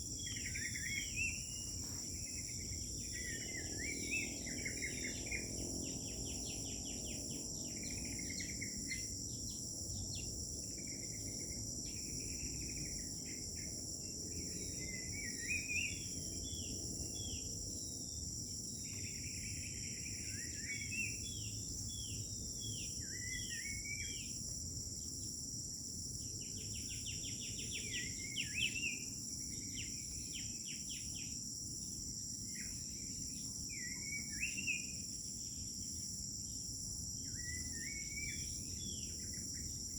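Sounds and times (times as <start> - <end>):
songbirds calling: 0.0 - 10.4
crickets trilling: 0.0 - 39.9.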